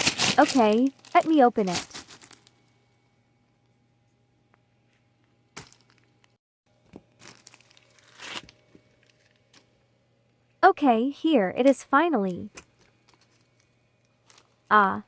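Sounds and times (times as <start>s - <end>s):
packaging tearing and crinkling: 0.0s - 2.6s, 7.0s - 9.4s.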